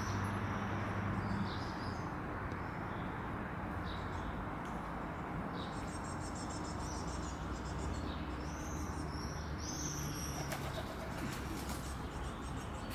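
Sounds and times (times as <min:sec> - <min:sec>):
small birds chirping: 0:05.5 - 0:12.9.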